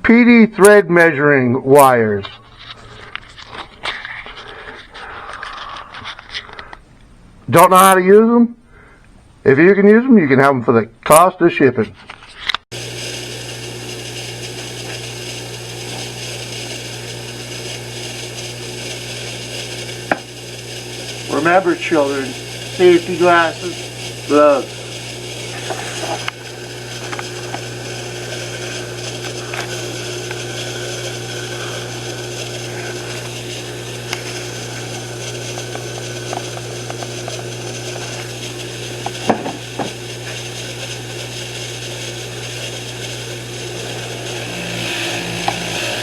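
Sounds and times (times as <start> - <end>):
power tool with wire wheel: 12.7 - 46.0.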